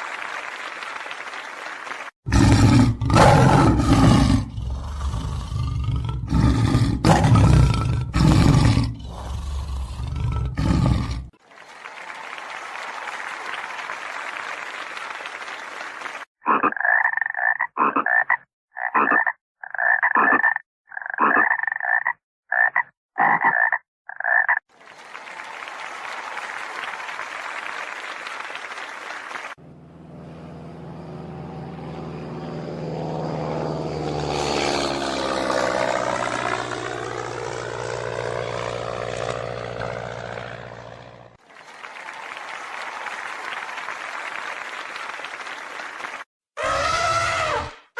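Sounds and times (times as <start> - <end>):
frog croaking: 16.4 - 24.6
droning hum sweeping in pitch: 29.6 - 41.4.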